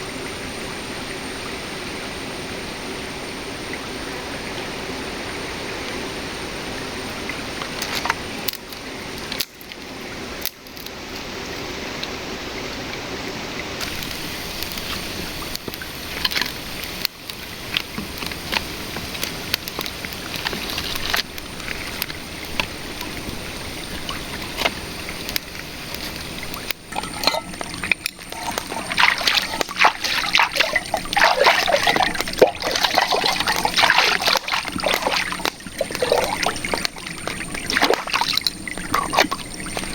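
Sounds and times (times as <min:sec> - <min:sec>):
river water trickling: 0:00.0 - 0:11.7, 0:13.6 - 0:39.9
water sloshing and splashing: 0:07.0 - 0:09.7, 0:13.8 - 0:39.9.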